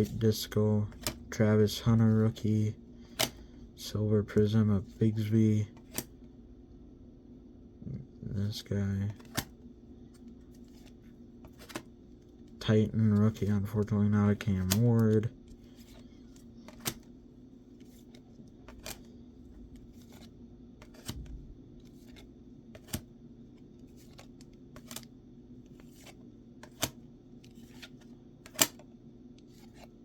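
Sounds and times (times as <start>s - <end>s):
steady low hum: 0.0s - 30.0s
trading cards clicking: 0.9s - 1.3s, 3.1s - 3.4s, 5.7s - 6.1s, 9.1s - 9.5s, 11.5s - 11.8s, 14.4s - 17.1s, 18.1s - 19.1s, 19.8s - 21.3s, 22.8s - 23.0s, 24.0s - 25.1s, 25.8s - 27.0s, 28.5s - 28.8s.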